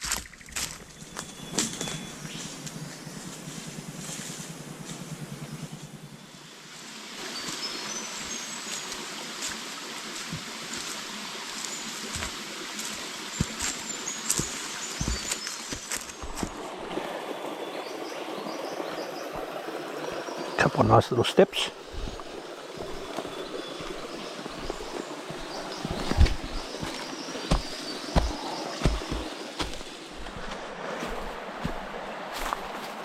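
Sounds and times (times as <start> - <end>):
footsteps on a walking track: 8.6 - 16.8, 21.7 - 33.0
steady rushing noise: 21.7 - 32.8.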